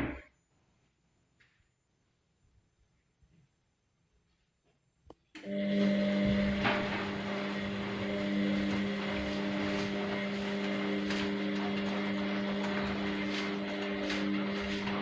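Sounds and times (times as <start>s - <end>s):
washing machine motor hum: 5.4s - 15.0s.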